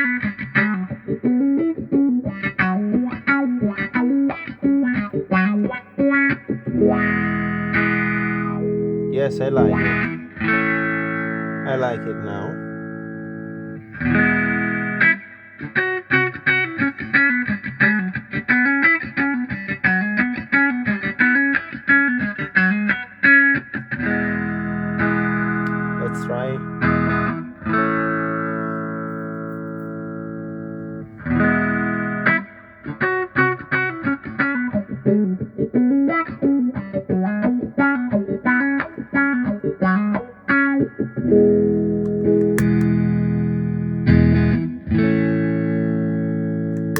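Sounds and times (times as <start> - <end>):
electric guitar riff with wah: 0.0 - 46.9
sharp click: 42.0 - 43.0.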